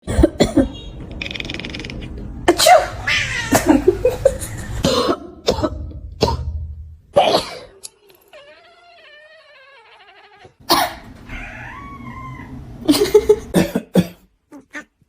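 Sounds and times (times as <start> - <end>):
person coughing: 0.0 - 0.8, 4.8 - 6.6, 7.2 - 7.8, 10.7 - 11.0, 13.0 - 14.3
cat meowing: 2.9 - 3.7, 8.3 - 10.6, 11.3 - 12.6.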